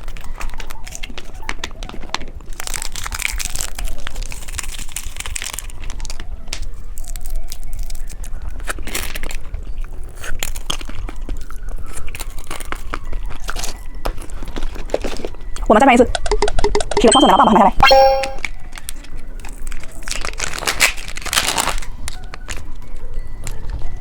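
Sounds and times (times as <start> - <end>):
sharp clicks and taps: 15.7 - 18.4.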